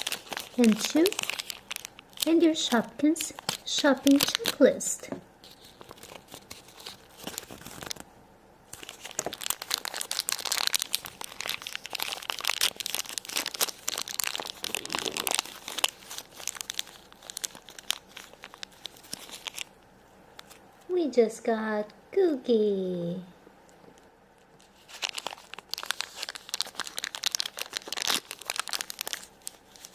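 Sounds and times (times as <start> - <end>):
plastic packaging crinkling and tearing: 0.0 - 4.8, 5.4 - 8.1, 8.7 - 20.6, 24.4 - 29.9.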